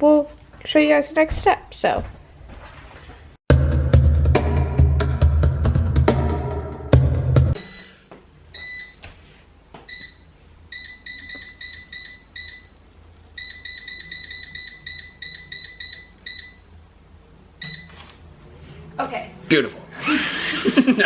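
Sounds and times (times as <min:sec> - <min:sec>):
appliance control panel beeps: 0:07.6 - 0:09.1, 0:09.8 - 0:16.8, 0:17.6 - 0:18.0.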